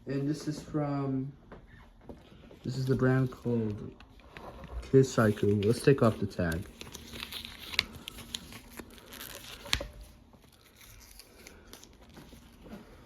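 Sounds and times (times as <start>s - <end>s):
tag tearing and crinkling: 4.9s - 12.7s.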